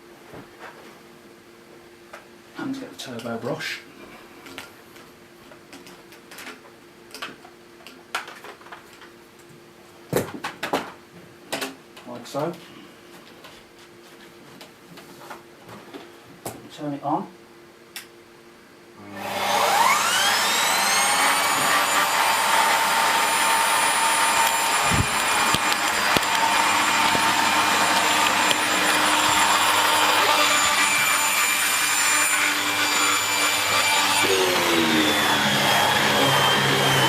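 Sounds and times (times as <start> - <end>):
vacuum cleaner motor whine: 19.0 - 37.0.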